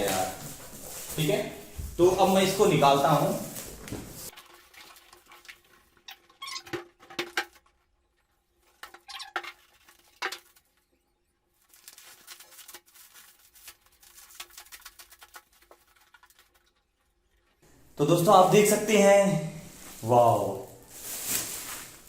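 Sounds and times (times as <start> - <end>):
packaging rustling and scraping: 11.6 - 16.8, 20.8 - 22.0.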